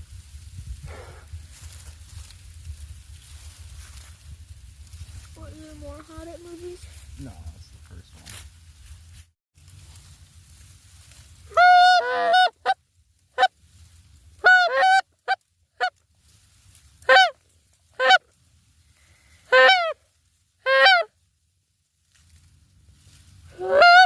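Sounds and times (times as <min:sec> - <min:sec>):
goose honking: 0:11.5 - 0:12.8, 0:14.4 - 0:15.9, 0:17.0 - 0:17.4, 0:18.0 - 0:18.2, 0:19.5 - 0:20.0, 0:20.6 - 0:21.1, 0:23.6 - 0:24.0.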